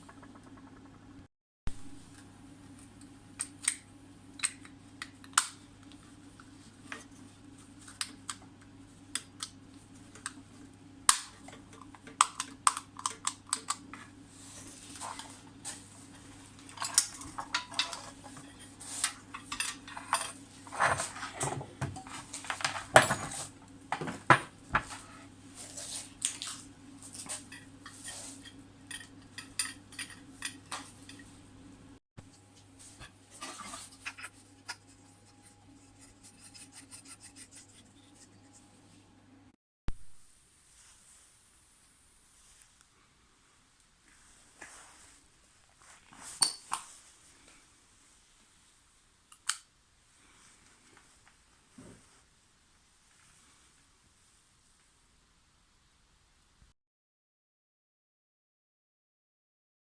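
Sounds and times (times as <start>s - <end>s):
steady low hum: 0.0s - 39.5s.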